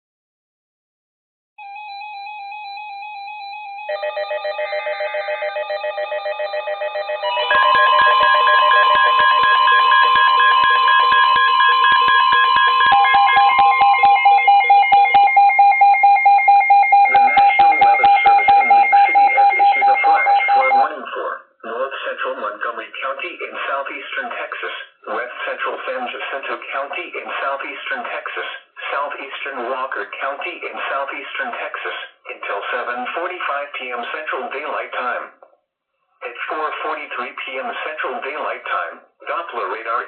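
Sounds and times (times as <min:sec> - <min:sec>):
rapid pulsing alarms: 0:01.9 - 0:20.9
weather radio alarm beeping: 0:03.9 - 0:21.0
radio voice speaking: 0:17.0 - 0:35.4, 0:36.2 - 0:40.0.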